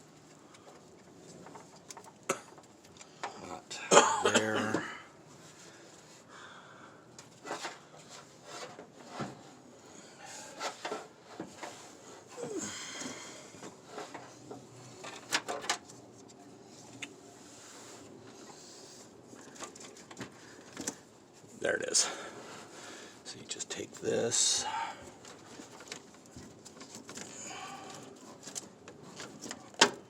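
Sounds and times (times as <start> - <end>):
hands rummaging through wiring: 13.4 - 17.2, 18.0 - 21.6, 25.1 - 30.0.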